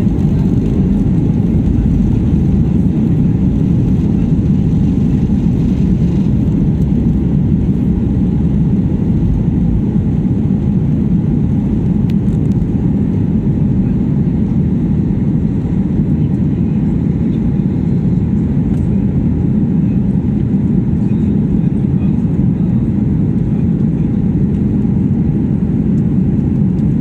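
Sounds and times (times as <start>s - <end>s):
jet engines roaring: 0.0s - 27.0s.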